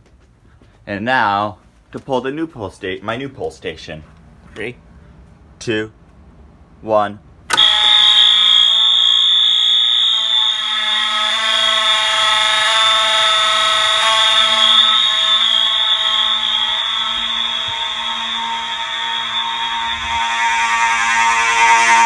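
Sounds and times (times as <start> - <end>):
fire alarm horns sounding: 7.5 - 22.0.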